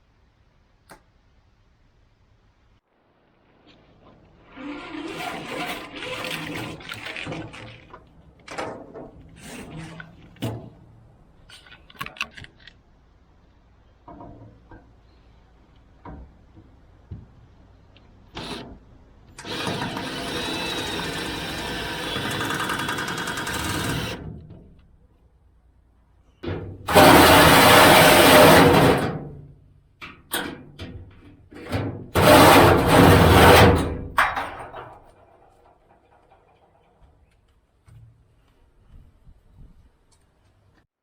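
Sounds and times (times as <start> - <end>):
power tool running: 4.5 - 7.2, 19.4 - 24.2, 26.9 - 29.0.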